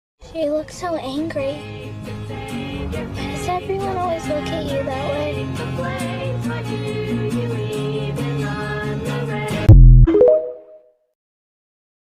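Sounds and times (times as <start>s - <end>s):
held notes over steady beat: 9.7s - 10.5s.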